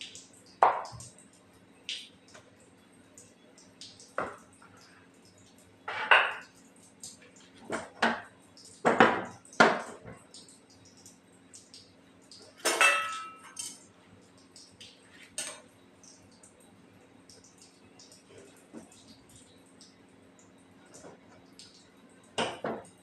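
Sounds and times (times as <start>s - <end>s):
kitchen utensils clattering: 12.6s - 13.8s.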